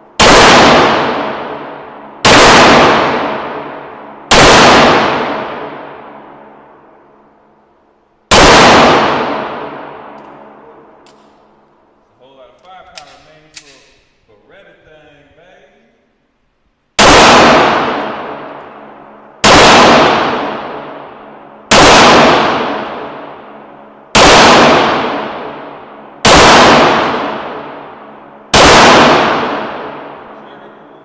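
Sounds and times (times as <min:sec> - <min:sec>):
pistol shots echoing: 0:00.1 - 0:07.2, 0:08.3 - 0:11.5, 0:17.0 - 0:30.8.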